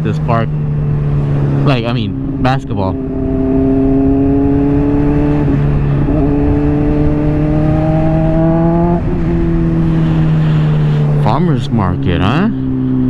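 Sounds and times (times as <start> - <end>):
wind rush: 3.0 - 11.8.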